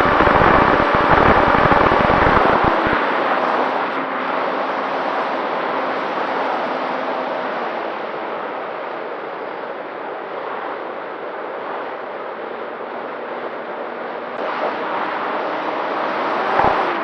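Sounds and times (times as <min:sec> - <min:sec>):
rush of air: 0:00.0 - 0:05.7, 0:14.2 - 0:17.0
faint motor hum: 0:00.0 - 0:08.7, 0:10.8 - 0:17.0.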